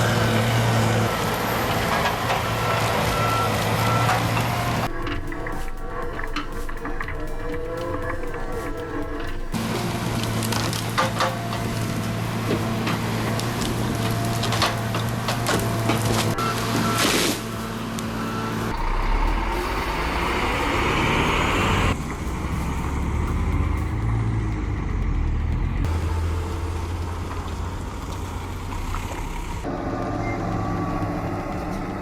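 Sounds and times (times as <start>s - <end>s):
diesel trucks running: 0.0s - 32.0s.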